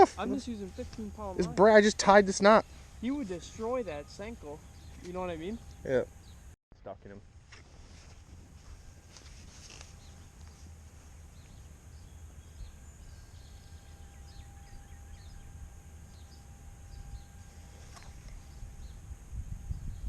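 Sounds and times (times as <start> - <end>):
bird chirps: 2.6 - 6.5, 11.3 - 19.1.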